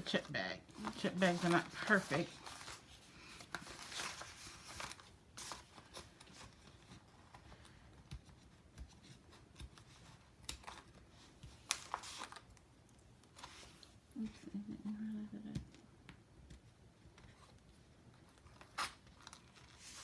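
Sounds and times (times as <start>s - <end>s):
paper bag rustling and crinkling: 0.0s - 7.7s, 11.6s - 12.6s, 18.2s - 20.0s.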